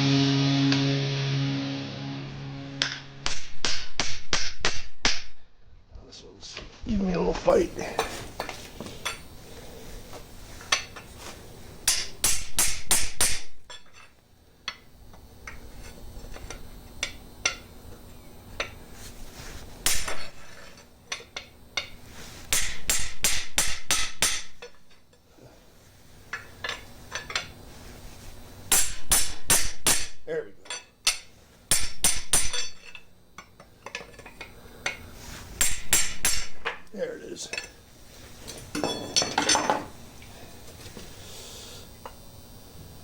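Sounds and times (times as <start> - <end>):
hammer blows on metal: 28.7 - 30.3.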